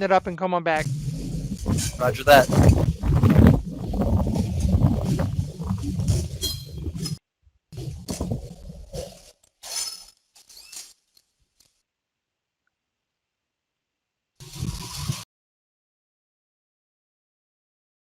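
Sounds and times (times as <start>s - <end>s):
rumbling handling noise: 0.8s - 7.2s, 7.8s - 9.3s.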